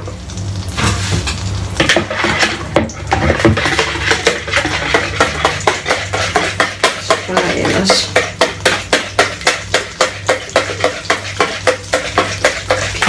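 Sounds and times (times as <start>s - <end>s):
utensil clinking against bowl: 3.1s - 13.0s.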